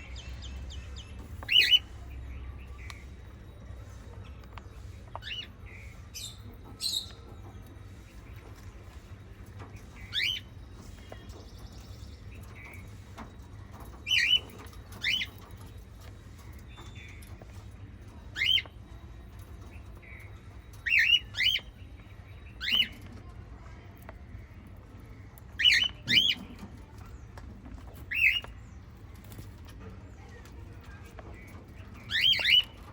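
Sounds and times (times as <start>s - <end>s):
parrots chirping: 1.2s - 1.9s, 14.0s - 15.8s, 18.3s - 18.8s, 19.9s - 23.0s, 25.6s - 26.6s, 31.9s - 32.9s.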